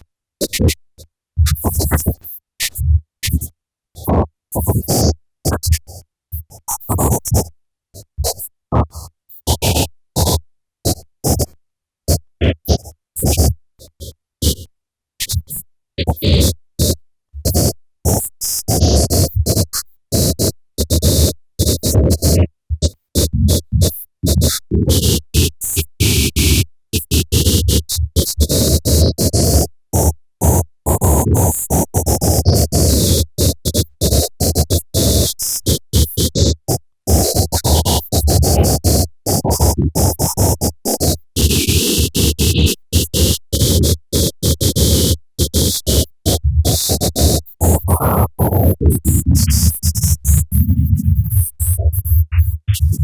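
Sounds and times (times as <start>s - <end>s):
crackling electronic noise: 52.0s - 53.0s.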